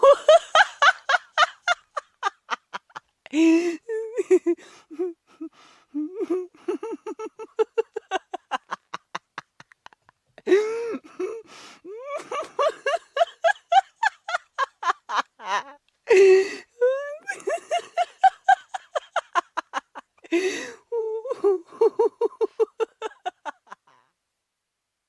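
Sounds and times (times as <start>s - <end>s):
person laughing hard: 0.0s - 24.0s.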